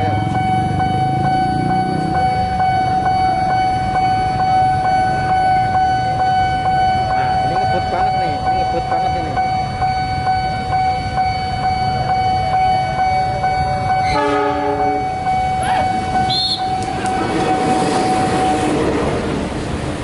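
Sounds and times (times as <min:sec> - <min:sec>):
level crossing warning siren: 0:00.0 - 0:20.0
train horn blast: 0:14.0 - 0:15.0
train clickety-clack rumble: 0:14.0 - 0:20.0.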